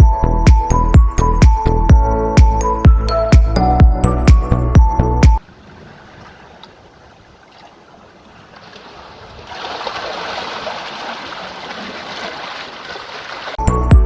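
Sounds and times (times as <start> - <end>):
sea water washing at shore: 5.4 - 13.6.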